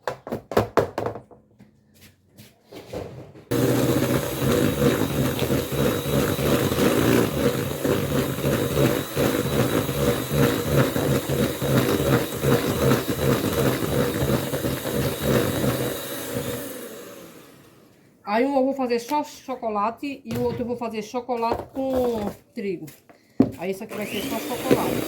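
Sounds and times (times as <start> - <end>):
kitchen appliance motor humming: 3.5 - 18.0, 23.9 - 25.0.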